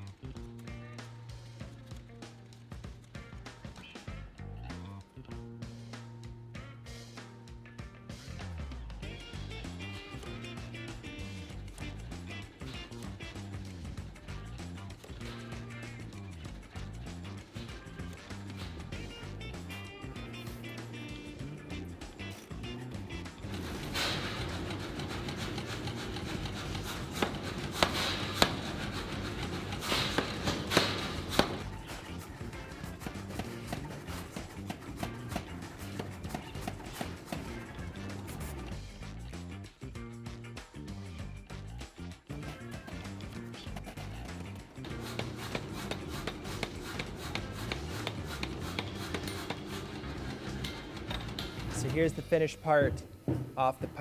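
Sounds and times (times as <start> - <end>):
power hammer striking hot steel: 23.4 - 38.1, 44.0 - 54.0
sharp knocks: 23.5 - 37.8, 43.8 - 54.0.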